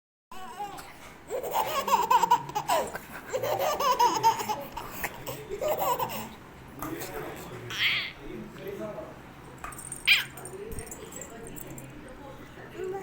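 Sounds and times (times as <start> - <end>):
baby laughing: 0.4 - 6.4, 7.7 - 8.2.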